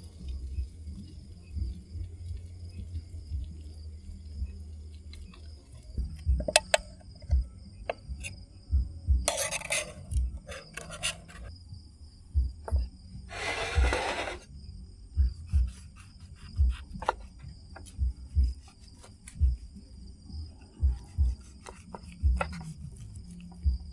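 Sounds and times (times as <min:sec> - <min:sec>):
insects chirring: 0:00.0 - 0:23.9
soft knocks and clicks: 0:06.3 - 0:08.0.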